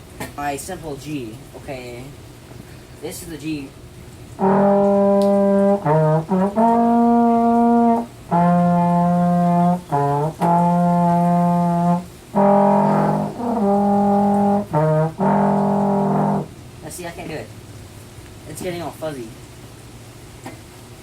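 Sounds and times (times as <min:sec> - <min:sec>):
low brass long notes: 0:04.4 - 0:16.6.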